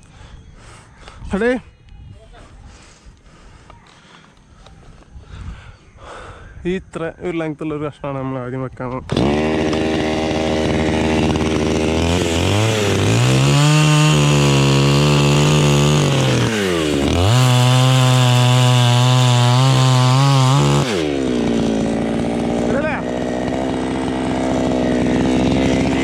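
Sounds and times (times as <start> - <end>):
chainsaw revving and cutting: 9.1 - 26.0.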